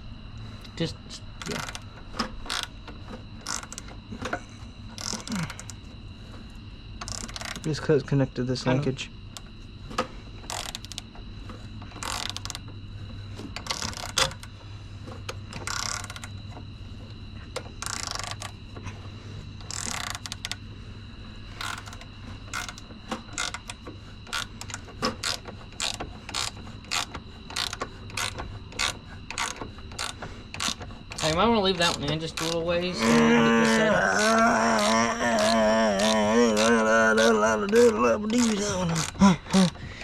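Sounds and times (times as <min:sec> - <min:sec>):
steady low hum: 0:00.0 - 0:40.0
ratchet wrench clicking: 0:21.6 - 0:32.6.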